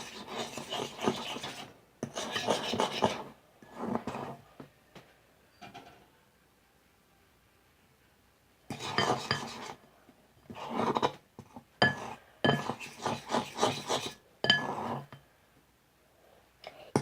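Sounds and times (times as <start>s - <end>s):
fork stirring slime in bowl: 0.0s - 4.4s, 8.7s - 9.8s, 10.5s - 15.2s.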